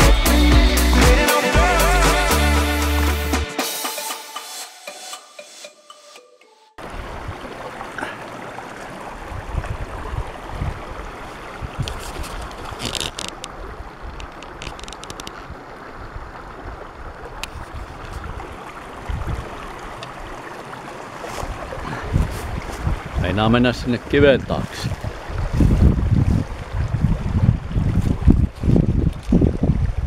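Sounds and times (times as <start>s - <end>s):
flowing water: 6.8s - 30.0s
wind buffeting microphone: 9.2s - 20.4s, 21.4s - 30.0s.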